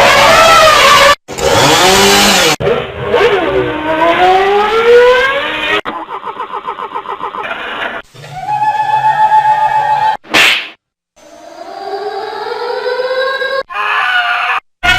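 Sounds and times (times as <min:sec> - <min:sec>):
long rising tone: 0:08.3 - 0:10.2, 0:11.2 - 0:13.7
sliding pitched sound effects: 0:11.2 - 0:13.6.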